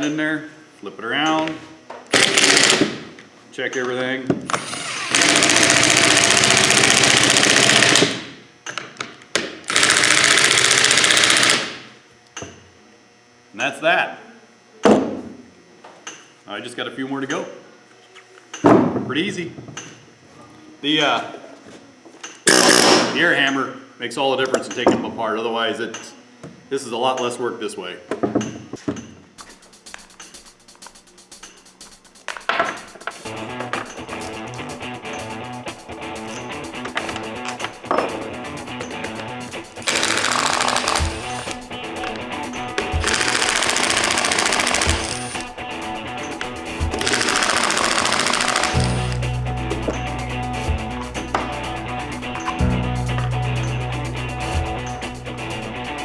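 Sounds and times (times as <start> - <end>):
impact wrench hammering: 2.1 - 3.0, 4.5 - 8.2, 9.7 - 11.8, 22.5 - 23.2, 39.1 - 50.1
guitar music: 33.1 - 56.0.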